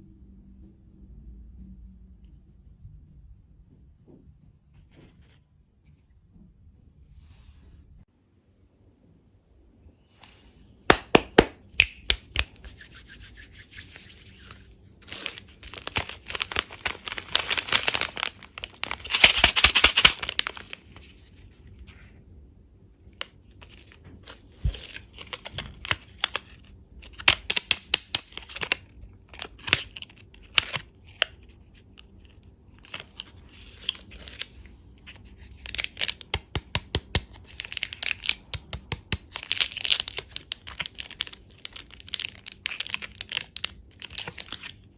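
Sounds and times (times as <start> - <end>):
plastic packaging crinkling: 14.0 - 21.2, 32.1 - 36.4, 37.4 - 38.6, 39.2 - 44.9.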